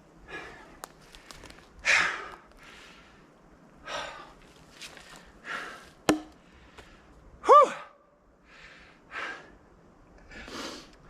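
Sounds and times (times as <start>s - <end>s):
sharp knock: 6.1s - 6.4s.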